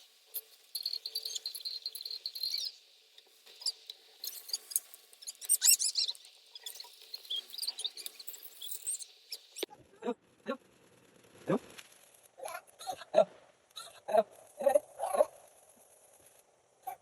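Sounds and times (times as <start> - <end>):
toy speaker squeaky chirps: 0.8 - 2.8, 3.6 - 9.7.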